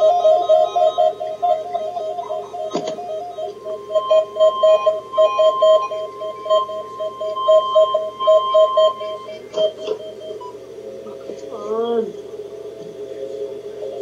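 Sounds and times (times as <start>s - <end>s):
rapid alarm beeping: 0.0s - 11.0s
steady high alert tone: 0.0s - 12.0s.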